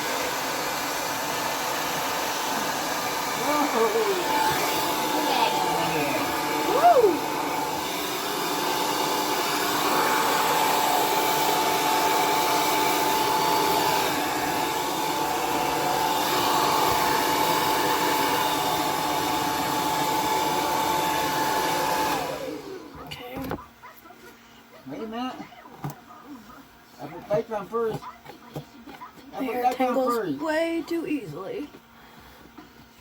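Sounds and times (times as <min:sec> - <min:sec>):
hair dryer running: 0:00.0 - 0:23.4.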